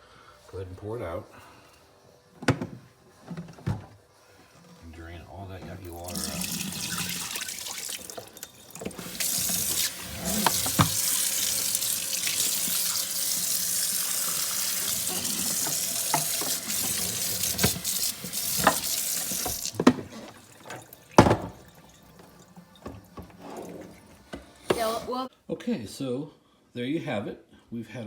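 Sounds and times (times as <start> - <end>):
water running into sink: 5.8 - 24.9.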